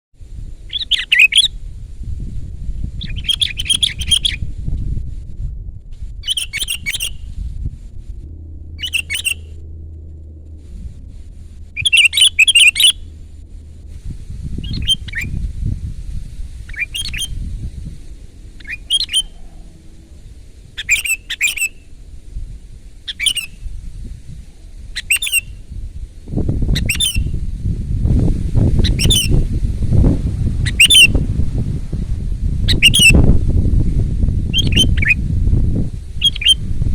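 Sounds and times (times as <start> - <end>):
low background rumble: 0.2 - 36.9
bird singing bubbly phrases: 0.7 - 1.5, 3.0 - 4.4, 8.8 - 9.5, 11.8 - 13.1, 14.6 - 15.4, 16.7 - 17.4, 18.6 - 20.1, 20.8 - 21.9.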